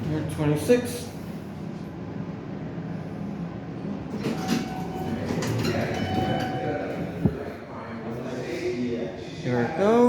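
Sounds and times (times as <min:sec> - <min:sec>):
elevator hum: 0:01.1 - 0:08.2
elevator doors clattering: 0:04.0 - 0:07.6.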